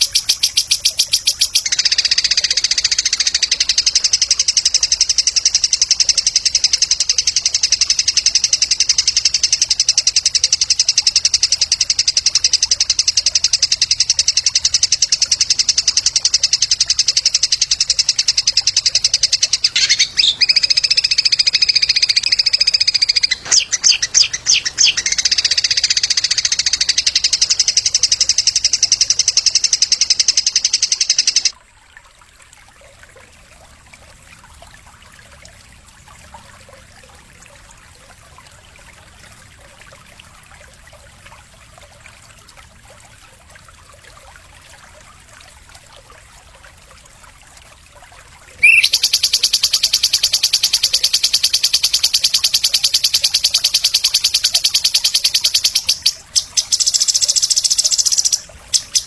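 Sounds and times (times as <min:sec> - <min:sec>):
bird whistle: 0:00.0 - 0:11.2, 0:17.1 - 0:31.5, 0:48.6 - 0:59.0
sharp bird chirps: 0:00.0 - 0:11.2, 0:15.3 - 0:31.5, 0:48.6 - 0:59.0
rapid high-pitched bird trill: 0:00.0 - 0:31.5, 0:48.6 - 0:59.0.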